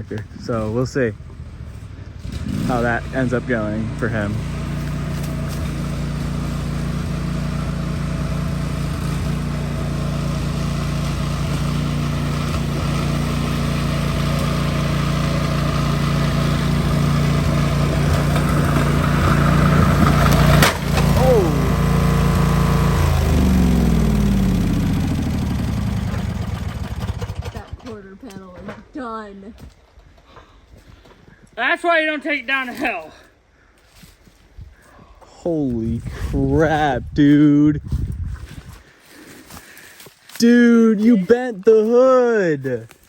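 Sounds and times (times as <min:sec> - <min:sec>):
lawn tractor engine running: 0:01.2 - 0:28.4
sharp crash: 0:18.2 - 0:21.8.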